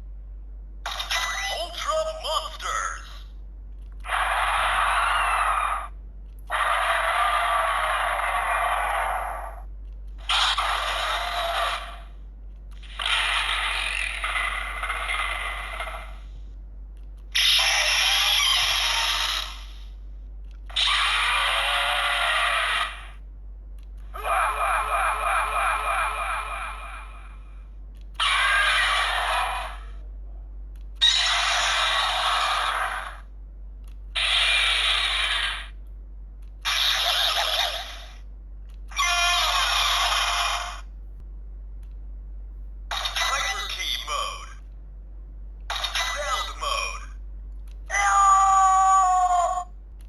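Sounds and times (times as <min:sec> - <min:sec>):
toy electronic sound effects: 0:34.2 - 0:35.8, 0:36.6 - 0:38.2, 0:38.9 - 0:40.8, 0:45.7 - 0:47.1.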